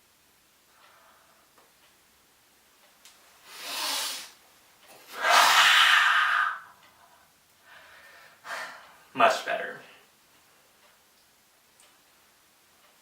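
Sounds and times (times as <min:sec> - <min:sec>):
man breathing in through nose: 0:03.4 - 0:04.4, 0:07.6 - 0:09.0.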